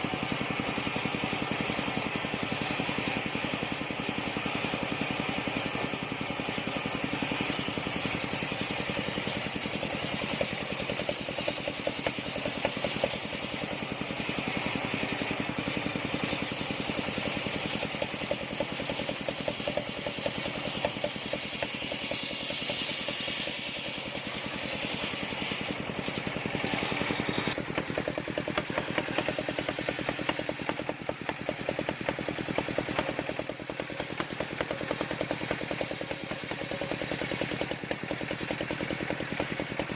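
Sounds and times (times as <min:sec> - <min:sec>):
saw engine running: 0:00.0 - 0:39.9.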